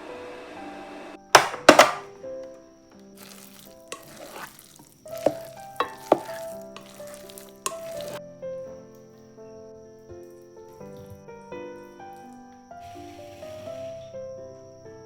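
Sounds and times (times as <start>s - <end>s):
soft background music: 0.0s - 15.0s
utensil knocking against pan: 1.4s - 2.1s, 5.2s - 7.0s
utensil stirring and scraping pan: 3.2s - 8.2s.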